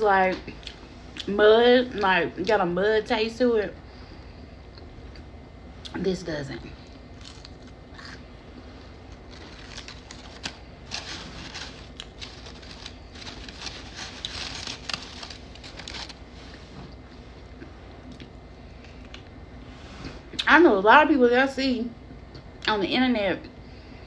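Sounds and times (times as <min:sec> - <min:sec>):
crisp chewing sounds: 0:06.8 - 0:19.3.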